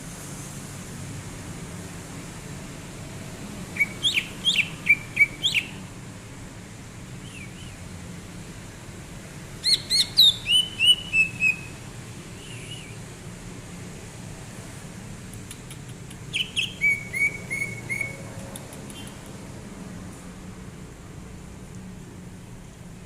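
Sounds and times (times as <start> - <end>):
bird whistling song: 3.7 - 5.8, 7.2 - 7.8, 9.6 - 13.1, 16.3 - 18.3, 18.9 - 19.2.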